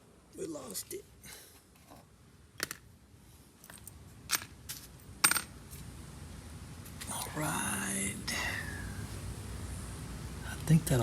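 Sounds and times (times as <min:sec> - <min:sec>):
small metal parts clinking: 0:03.6 - 0:05.5.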